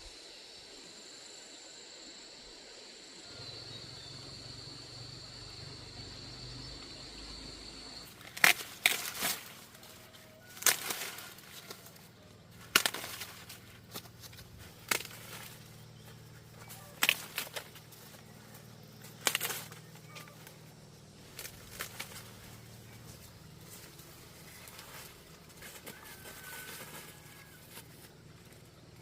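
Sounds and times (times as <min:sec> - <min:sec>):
faint low hum: 0:00.0 - 0:29.0
sharp cracks and rustles: 0:08.1 - 0:15.8, 0:16.6 - 0:20.6, 0:21.2 - 0:29.0.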